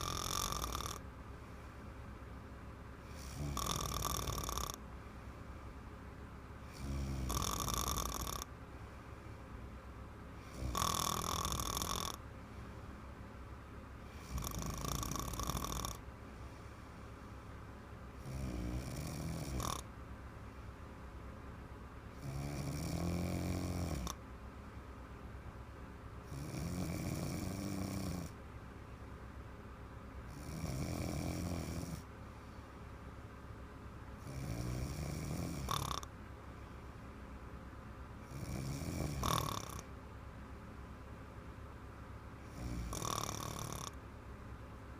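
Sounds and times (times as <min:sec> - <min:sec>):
woman snoring: 0:00.0 - 0:01.0, 0:03.1 - 0:04.8, 0:06.7 - 0:08.5, 0:10.4 - 0:12.2, 0:14.1 - 0:16.0, 0:18.2 - 0:19.8, 0:22.2 - 0:24.2, 0:26.3 - 0:28.4, 0:30.3 - 0:32.1, 0:34.2 - 0:36.1, 0:38.2 - 0:39.8, 0:42.5 - 0:44.0.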